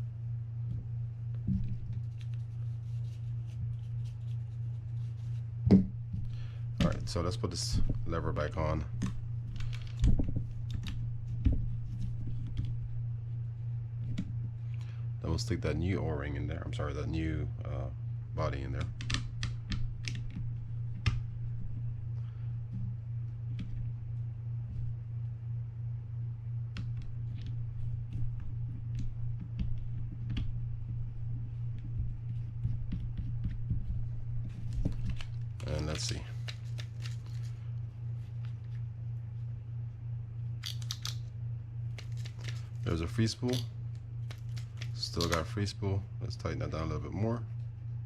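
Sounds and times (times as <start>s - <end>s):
low hum: 0.0s - 48.0s
clicks of small reel parts: 40.6s - 41.2s, 41.9s - 45.6s.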